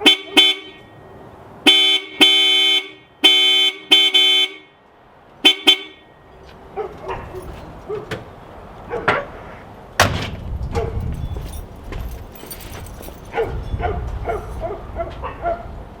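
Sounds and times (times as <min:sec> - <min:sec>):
dog barking and yipping: 0:06.7 - 0:08.2, 0:08.8 - 0:09.4, 0:10.7 - 0:11.1, 0:12.5 - 0:15.8
sharp thump: 0:10.0 - 0:11.0.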